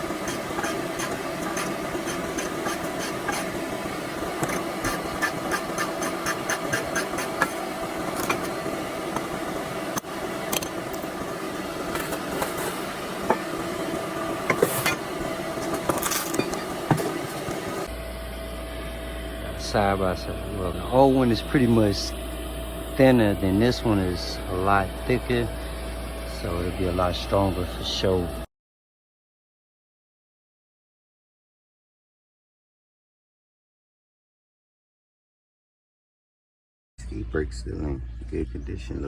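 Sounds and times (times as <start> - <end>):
steady hum: 0.0 - 28.5.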